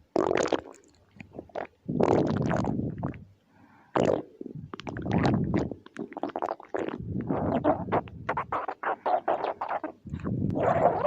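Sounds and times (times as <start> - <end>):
stomach growling: 0.2 - 3.3, 4.0 - 11.0.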